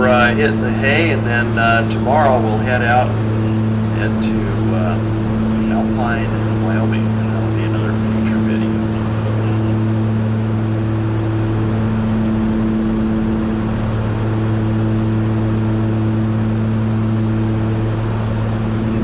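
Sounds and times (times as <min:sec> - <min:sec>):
aircraft engines droning in cabin: 0:00.0 - 0:10.7.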